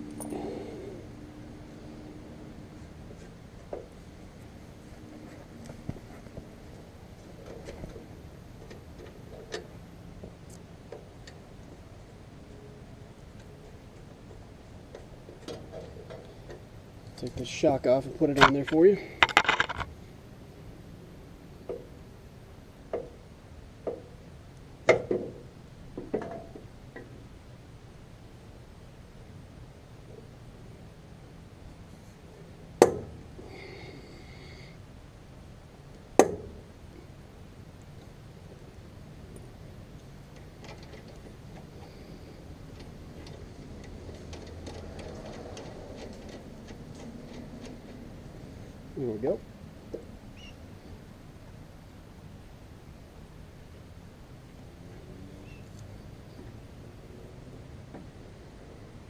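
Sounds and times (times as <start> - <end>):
metal parts clinking and knocking: 18.4 - 19.9.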